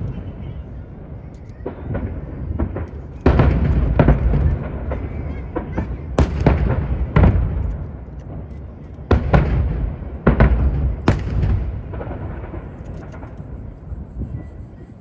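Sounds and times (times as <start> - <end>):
firework shells booming: 0.0 - 14.3.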